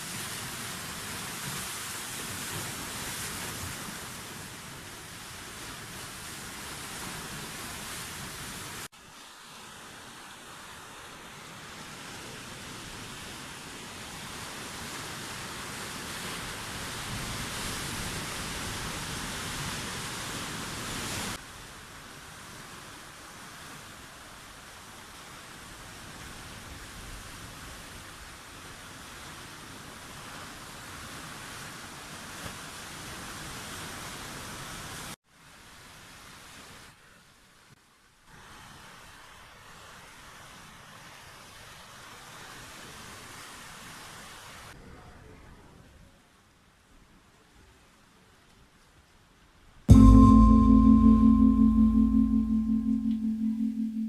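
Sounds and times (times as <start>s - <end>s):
sea surf washing on shore: 0.0s - 27.7s.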